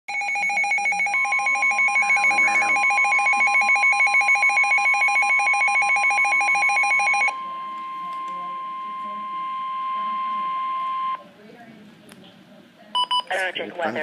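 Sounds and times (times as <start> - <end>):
rapid electronic trill alarm: 0.1 - 7.6
steady warning alarm tone: 0.1 - 11.2.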